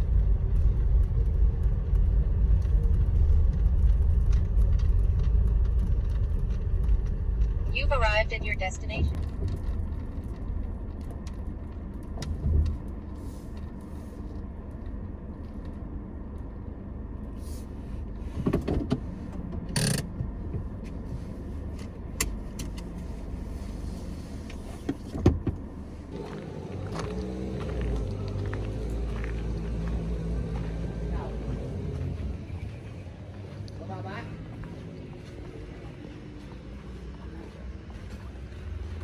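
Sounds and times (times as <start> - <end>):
car engine low rumble: 0.0 - 39.0.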